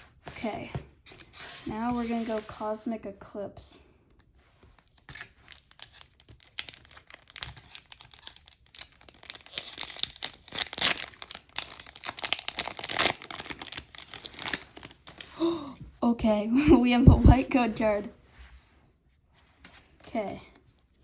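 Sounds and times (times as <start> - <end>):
foil wrapper tearing and crinkling: 4.8 - 15.3.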